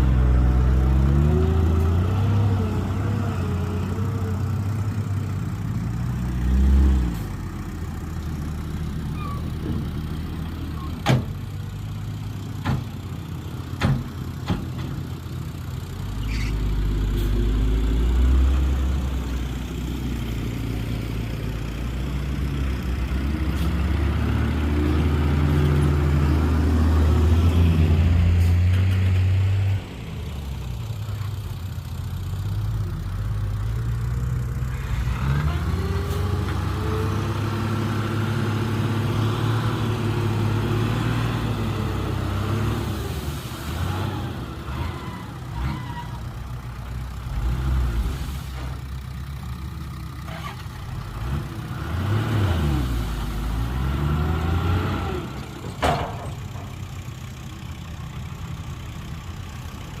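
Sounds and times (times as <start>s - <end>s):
diesel machinery engines revving: 0.0s - 60.0s.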